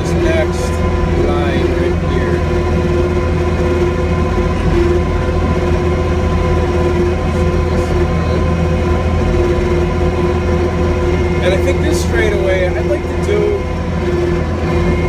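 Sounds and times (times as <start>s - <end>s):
diesel engine droning under load: 0.0s - 15.0s
steady whine: 0.0s - 15.0s.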